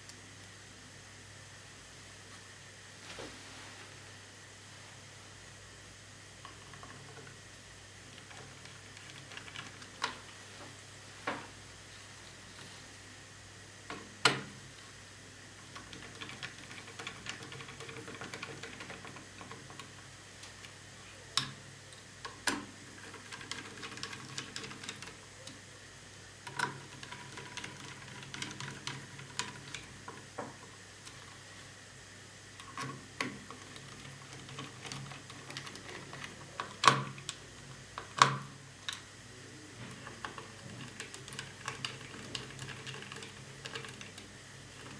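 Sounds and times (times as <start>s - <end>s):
small clicks and taps on plastic: 38.0s - 39.1s.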